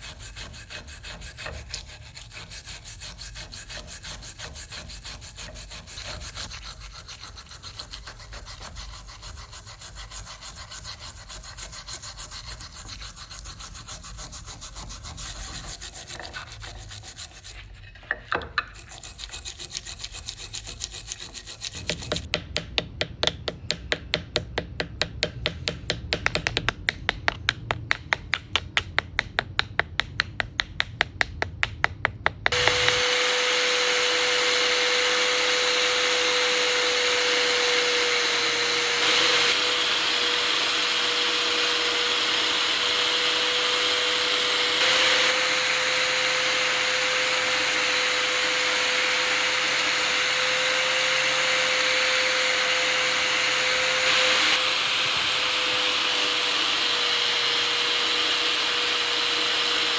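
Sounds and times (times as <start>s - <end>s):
hand tool rasping strokes: 0.0s - 22.4s, 32.5s - 59.9s
power tool motor humming: 32.5s - 59.9s.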